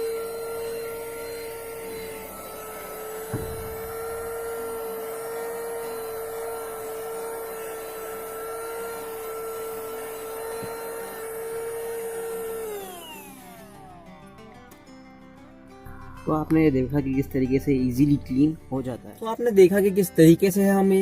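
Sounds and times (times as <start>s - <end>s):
car vacuum cleaner whining: 0.0s - 14.9s
knock: 3.3s - 4.8s.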